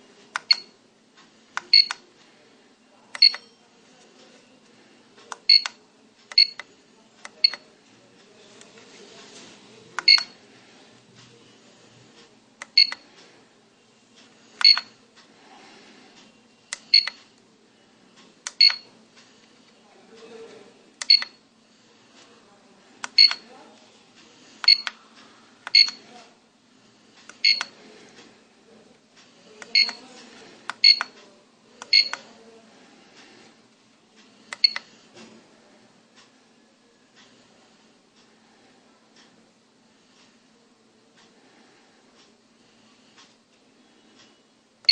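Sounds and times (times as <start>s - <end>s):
click: 0.3s - 0.6s
short electronic beeps: 1.7s - 2.0s, 3.2s - 3.5s, 5.5s - 5.7s, 6.4s - 6.6s, 10.1s - 10.4s, 12.8s - 13.0s, 14.6s - 14.9s, 16.9s - 17.2s, 18.6s - 18.8s, 21.1s - 21.4s, 25.8s - 26.0s, 27.4s - 27.7s, 30.8s - 31.1s, 31.9s - 32.2s
button clicks: 3.2s - 3.5s.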